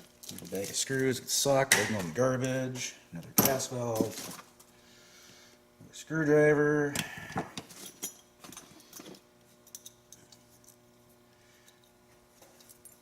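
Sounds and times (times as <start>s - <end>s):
faint steady hum: 0.0s - 13.0s
metal tools clicking and clinking: 7.7s - 10.8s.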